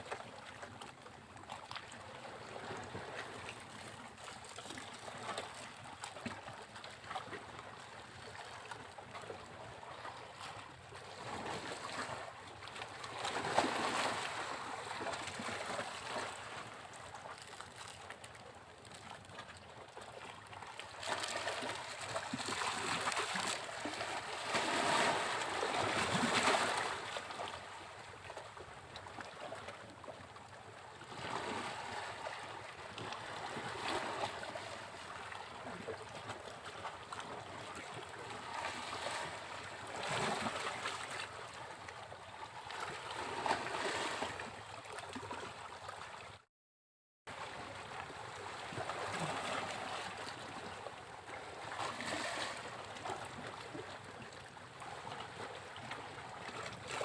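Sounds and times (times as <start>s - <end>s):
sea waves breaking on beach: 13.0s - 18.0s, 20.8s - 27.6s.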